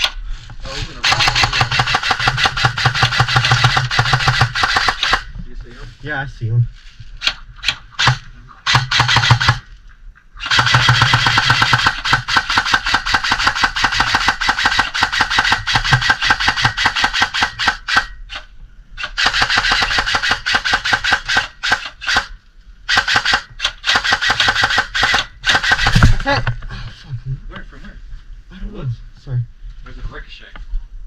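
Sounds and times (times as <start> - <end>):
airsoft gun firing bursts: 1.0 - 5.3, 7.2 - 9.7, 10.4 - 18.2, 19.0 - 22.3, 22.9 - 26.2.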